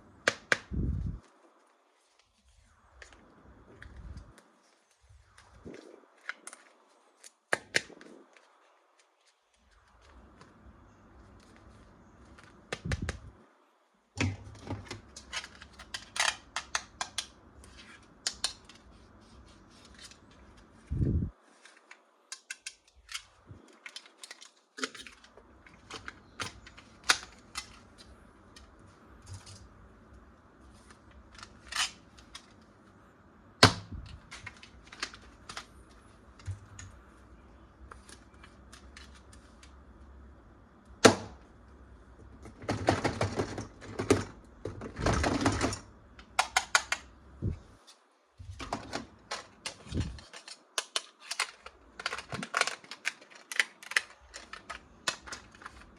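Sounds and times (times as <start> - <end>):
plastic parts clicking and snapping: 14.2 - 19.0, 21.6 - 29.7, 30.8 - 32.7, 33.6 - 37.0, 42.4 - 47.1, 48.5 - 55.9.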